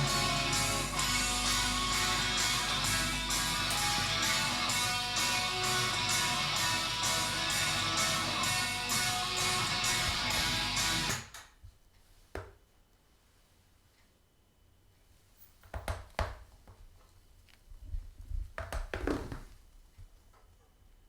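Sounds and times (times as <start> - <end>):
stereo music: 0.0 - 11.2.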